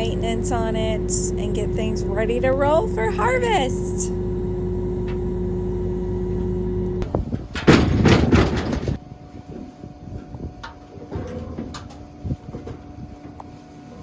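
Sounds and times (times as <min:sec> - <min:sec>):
combine engine running: 0:00.0 - 0:08.9
quiet steady hum: 0:00.0 - 0:14.0
loud metal clatter: 0:07.0 - 0:09.0.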